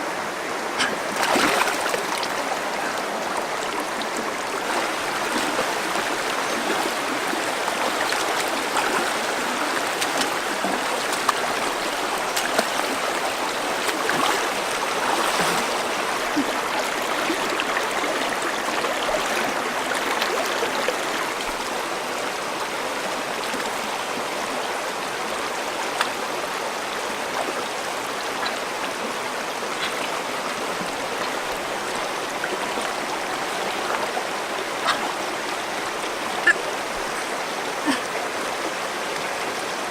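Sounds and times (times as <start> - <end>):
stream water running: 0.0 - 39.9.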